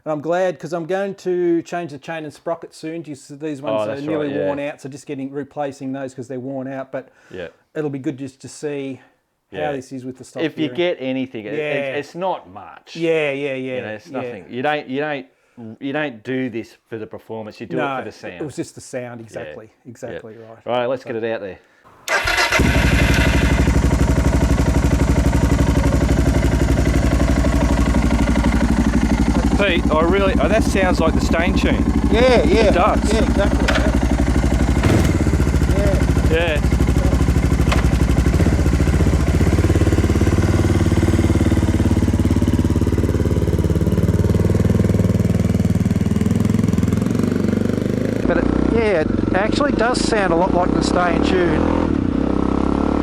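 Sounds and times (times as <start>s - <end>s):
motorcycle engine starting and idling: 21.9s - 50.3s.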